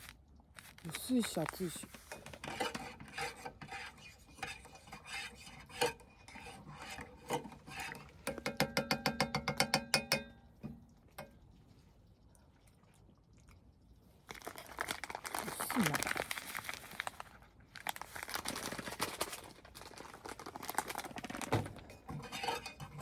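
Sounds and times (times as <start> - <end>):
spoon stirring in a cup: 1.2 - 10.8, 21.8 - 23.0.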